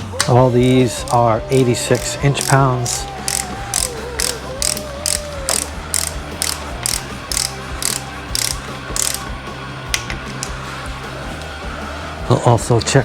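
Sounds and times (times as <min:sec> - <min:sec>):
socket ratchet clicking: 0:01.0 - 0:10.6.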